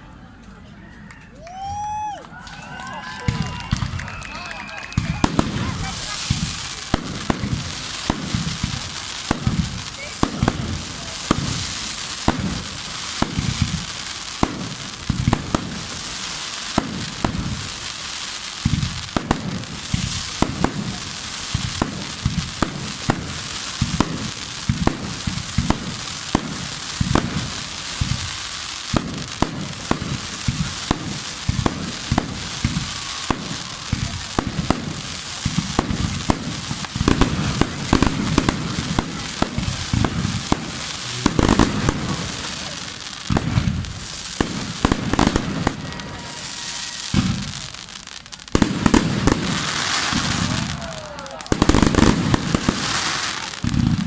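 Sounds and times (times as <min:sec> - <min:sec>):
fireworks bangs: 0:01.5 - 0:54.0
fireworks crackle and hiss: 0:01.5 - 0:54.0.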